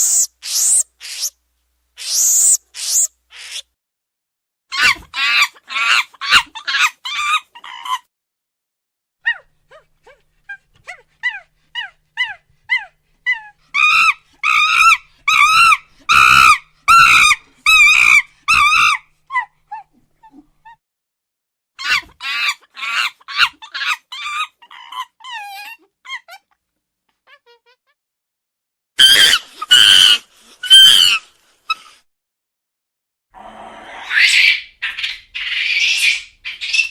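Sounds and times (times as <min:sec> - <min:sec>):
monkey calling: 0:00.0 - 0:01.4, 0:02.0 - 0:03.7, 0:13.8 - 0:19.0, 0:29.0 - 0:31.2, 0:34.0 - 0:36.9.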